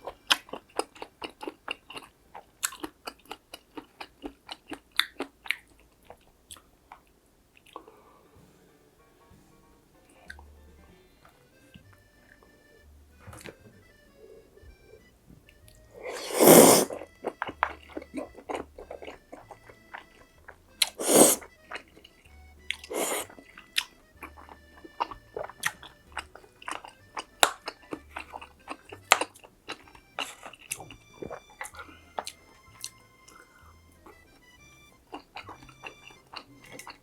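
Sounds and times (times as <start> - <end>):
wet chewing clicks: 0.0 - 8.0, 10.1 - 10.6, 13.2 - 14.0, 14.6 - 37.0
crunching bites: 15.4 - 34.4.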